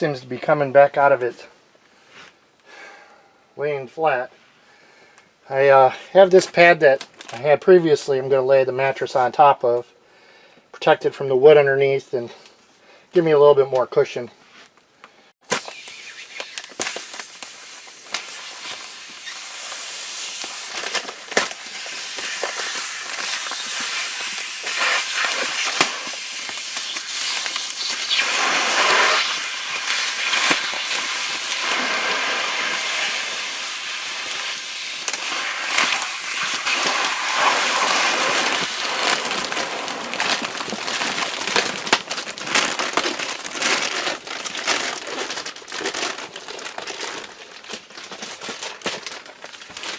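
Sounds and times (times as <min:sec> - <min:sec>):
sharp crackles: 0:15.4 - 0:49.9
mattress rustling and crinkling: 0:35.8 - 0:49.9.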